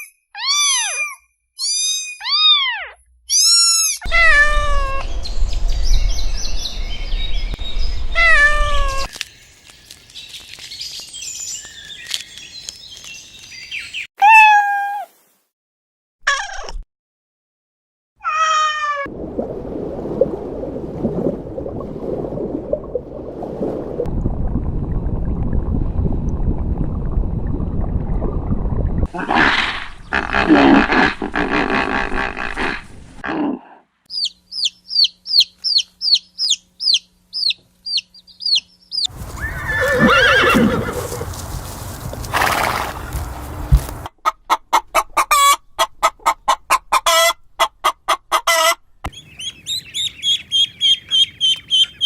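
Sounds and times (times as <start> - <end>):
cat meowing: 4.1 - 5.0.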